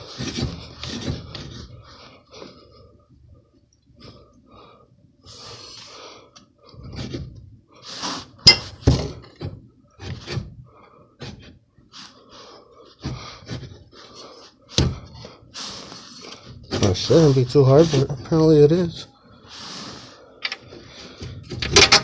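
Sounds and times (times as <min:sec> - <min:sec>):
strained breathing: 0:00.0 - 0:07.1, 0:10.6 - 0:17.5, 0:19.1 - 0:21.6.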